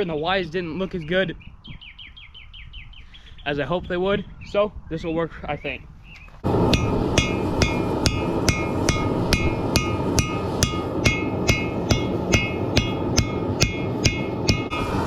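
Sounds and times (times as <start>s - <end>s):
steady rushing noise: 6.4s - 15.0s
hammer striking steel on anvil: 6.6s - 14.8s.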